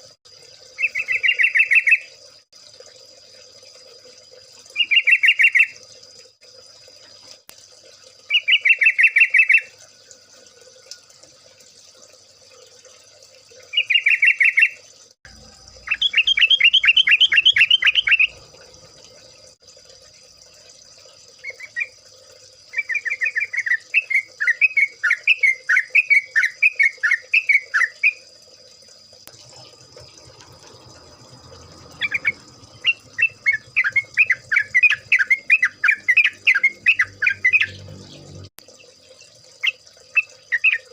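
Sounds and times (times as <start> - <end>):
birds singing bubbling chatter: 0.8 - 2.1, 4.8 - 5.8, 8.3 - 9.7, 13.7 - 14.8, 15.6 - 18.9, 29.5 - 38.9, 39.6 - 40.9.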